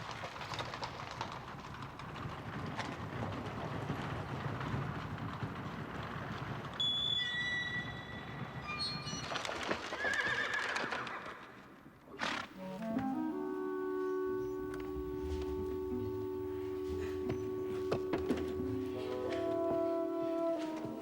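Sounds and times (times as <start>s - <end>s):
horse whinnying: 9.9s - 12.9s
background music rising chord: 12.6s - 21.0s.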